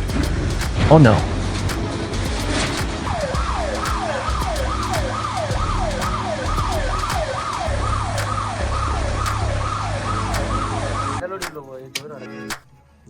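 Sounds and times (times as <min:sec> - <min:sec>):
steady low hum: 0:00.0 - 0:11.2
falling siren-like tone: 0:02.4 - 0:11.2.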